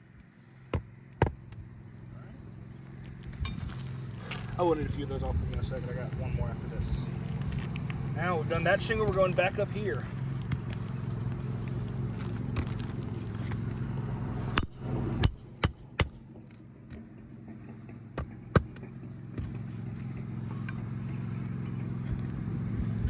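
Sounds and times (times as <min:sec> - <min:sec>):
steady low hum: 0:00.0 - 0:23.0
hammer striking nails: 0:14.6 - 0:19.7.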